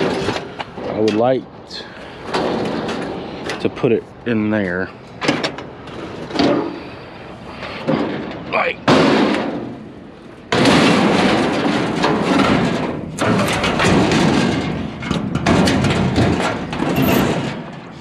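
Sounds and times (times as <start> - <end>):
metal scrap clattering and scraping: 10.5 - 17.9
loud thud: 13.2 - 14.9.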